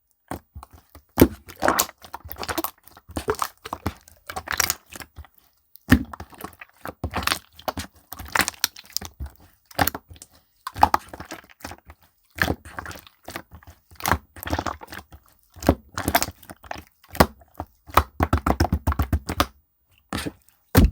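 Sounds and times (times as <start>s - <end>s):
slime crackling and crunching: 1.4s - 5.1s.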